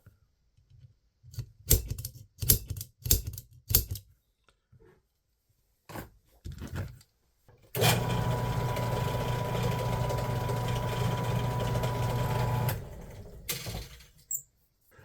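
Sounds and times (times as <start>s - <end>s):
power drill drilling: 7.8s - 13.3s.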